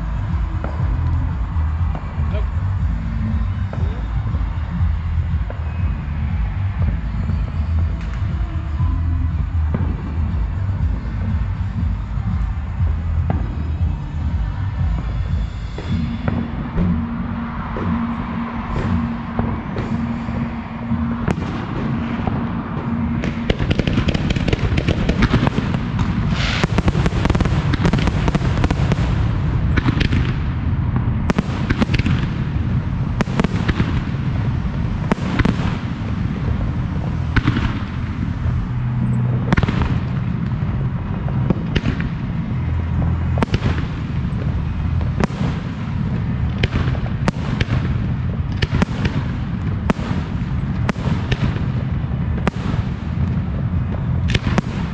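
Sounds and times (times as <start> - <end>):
fireworks crackle: 0.0 - 54.9
firework shells bursting: 23.2 - 30.4.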